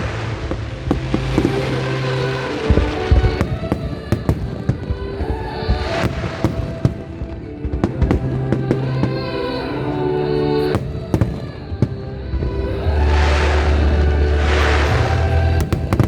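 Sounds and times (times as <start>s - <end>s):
fireworks bursting with crackle: 0.0s - 9.2s
loud recorded music: 0.0s - 16.0s.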